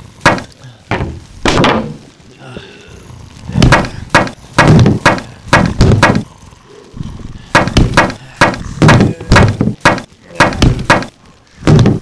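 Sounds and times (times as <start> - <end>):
heavy thuds on wood: 0.2 - 2.0, 3.6 - 6.3, 7.5 - 12.0.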